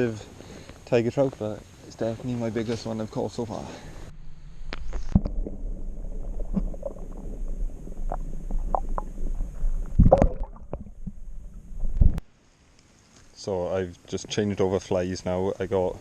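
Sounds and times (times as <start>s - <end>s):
loud thumps: 4.1s - 12.2s
microphone handling rumble: 4.1s - 12.2s.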